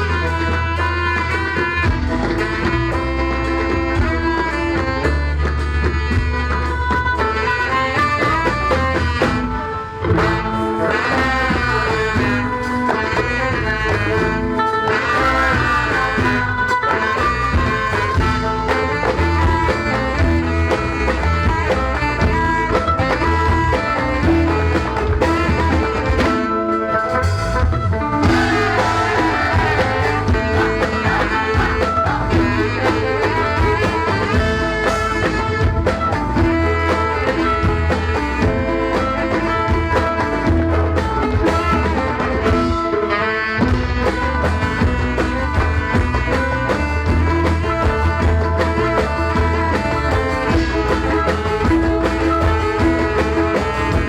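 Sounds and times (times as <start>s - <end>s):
steady low drum beat: 8.0s - 26.4s, 28.2s - 42.8s, 43.7s - 54.0s.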